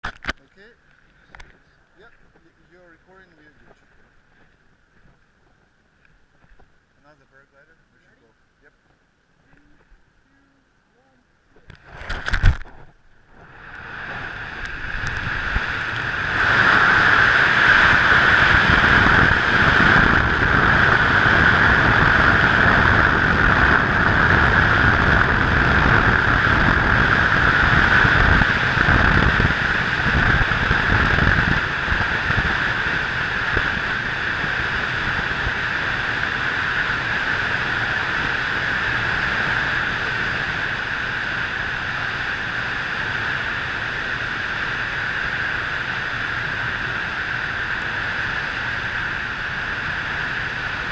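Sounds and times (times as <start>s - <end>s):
wind rushing over microphone: 11.7s - 50.9s.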